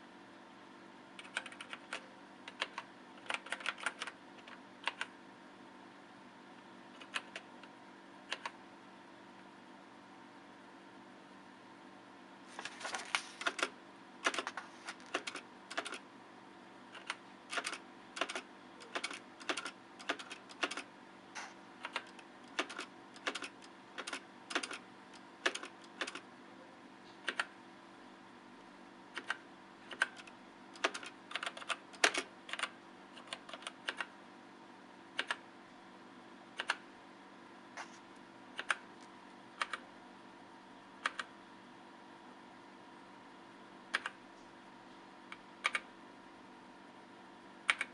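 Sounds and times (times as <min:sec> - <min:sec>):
mechanical keyboard typing: 0:01.2 - 0:05.1, 0:06.9 - 0:07.6, 0:08.3 - 0:08.6, 0:13.4 - 0:16.0, 0:16.9 - 0:20.9, 0:21.8 - 0:26.3, 0:27.2 - 0:27.5, 0:29.1 - 0:34.1, 0:35.2 - 0:35.4, 0:36.6 - 0:36.8, 0:38.6 - 0:38.8, 0:39.6 - 0:39.8, 0:41.0 - 0:41.3, 0:43.9 - 0:44.2, 0:45.6 - 0:45.9, 0:47.7 - 0:47.9.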